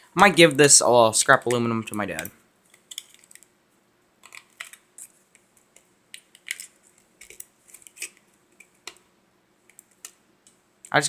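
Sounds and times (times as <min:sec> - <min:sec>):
clicks and scrapes of phone parts: 0:02.2 - 0:03.5, 0:04.2 - 0:09.0.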